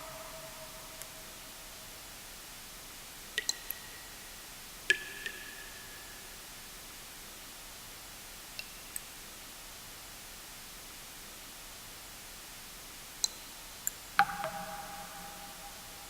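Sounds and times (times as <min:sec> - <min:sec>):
white-noise hiss: 0:00.0 - 0:16.0
water drops plinking into water: 0:03.4 - 0:04.1, 0:04.9 - 0:06.0, 0:14.2 - 0:16.0.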